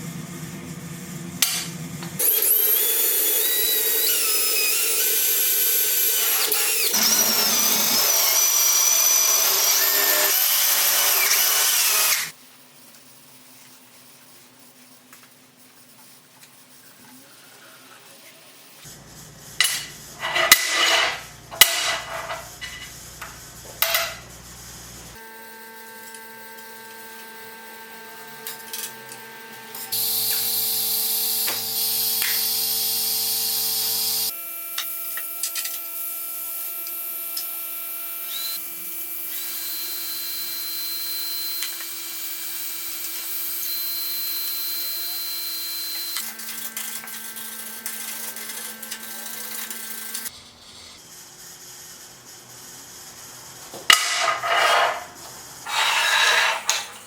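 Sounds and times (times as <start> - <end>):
power tool motor hum: 2.2 - 12.4, 25.1 - 51.0.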